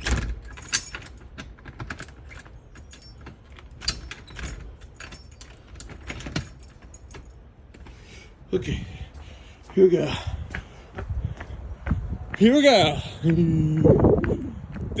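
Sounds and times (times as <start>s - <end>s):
keys clinking and rattling: 0.0s - 8.0s
wind rumble on microphone: 8.6s - 15.0s.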